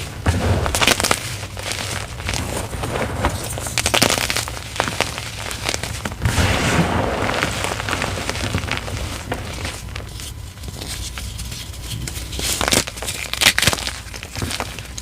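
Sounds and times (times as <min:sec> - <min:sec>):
chalk block crunching: 0:07.3 - 0:15.0.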